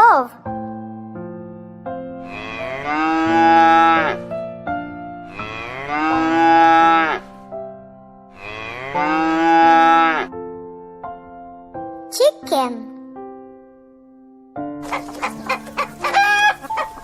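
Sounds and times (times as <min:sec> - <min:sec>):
soft piano music: 0:00.0 - 0:17.0
cow mooing: 0:02.2 - 0:04.2, 0:05.3 - 0:07.3, 0:08.3 - 0:10.3.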